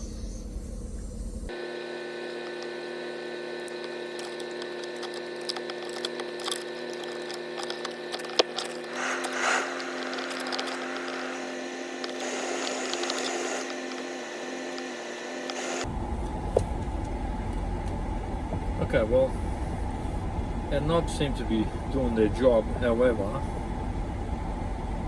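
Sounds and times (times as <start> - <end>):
steady hum: 0.0 - 25.0
control knobs clicking: 3.7 - 14.1.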